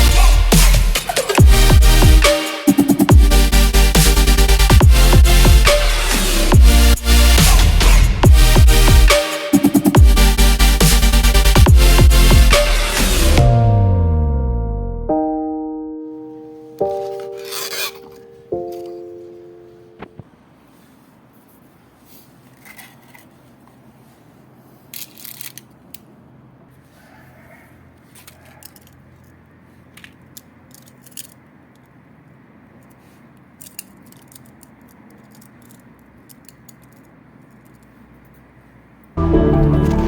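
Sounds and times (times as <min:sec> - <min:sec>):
hand tools clicking and rattling: 0:28.2 - 0:29.4, 0:33.5 - 0:37.9.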